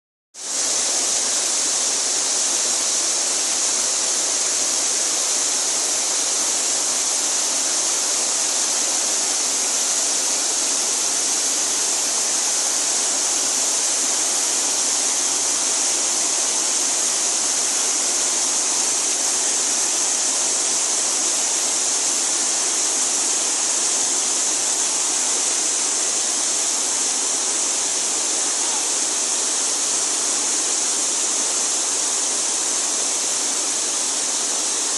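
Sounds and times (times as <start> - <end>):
waterfall rushing: 0.4 - 34.9.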